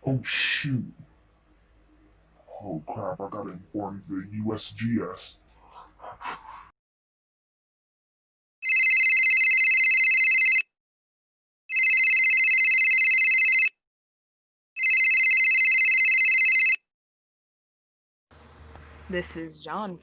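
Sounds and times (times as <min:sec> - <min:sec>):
telephone ringing trill: 0:08.6 - 0:10.7, 0:11.7 - 0:13.7, 0:14.8 - 0:16.8.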